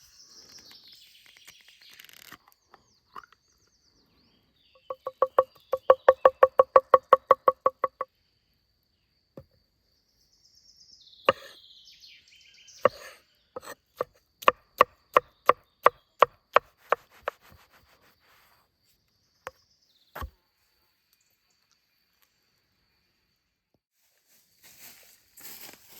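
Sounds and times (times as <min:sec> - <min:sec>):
chopping strokes on wood: 0:04.9 - 0:08.0, 0:11.3 - 0:11.5, 0:12.8 - 0:17.8, 0:20.2 - 0:20.4.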